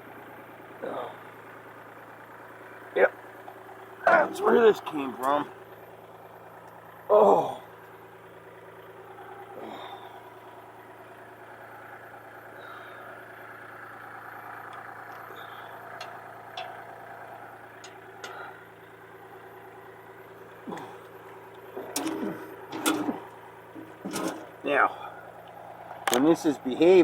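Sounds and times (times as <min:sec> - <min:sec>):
engine idling: 0:00.0 - 0:27.0
light metallic clicks: 0:14.6 - 0:18.7.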